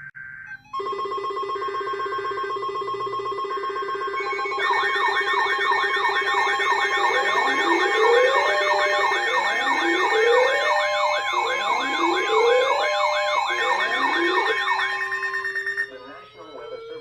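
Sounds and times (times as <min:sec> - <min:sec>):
steady alert tones: 0:00.5 - 0:17.0
siren yelp sweeping: 0:04.2 - 0:17.0.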